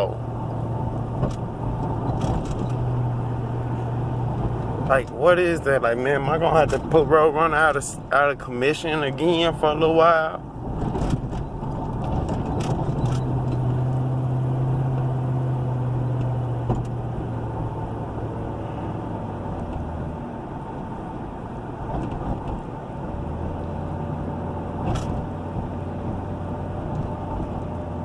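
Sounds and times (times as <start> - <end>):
car engine hum: 0.0 - 28.0.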